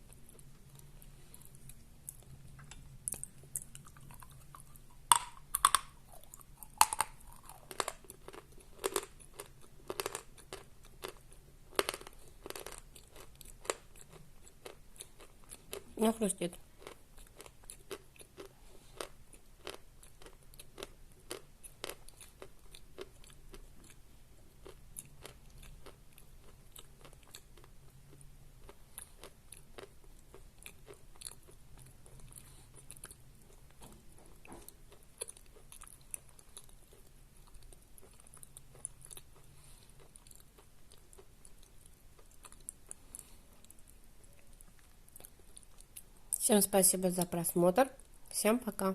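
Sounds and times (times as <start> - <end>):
chewing chalk: 0.0 - 15.9.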